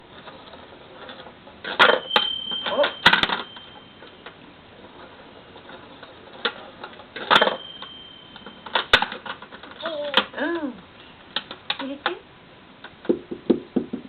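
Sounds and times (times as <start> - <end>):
high bell tone ringing: 1.9 - 4.4, 7.3 - 8.9.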